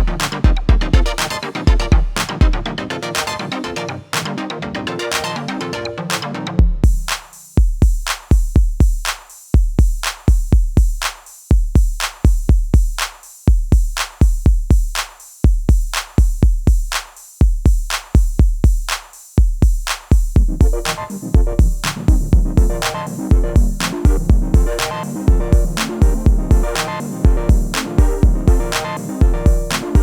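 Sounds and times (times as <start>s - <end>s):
drum machine kicks: 0.0s - 2.8s, 6.6s - 30.0s
electronic music: 0.0s - 7.4s, 20.3s - 30.0s.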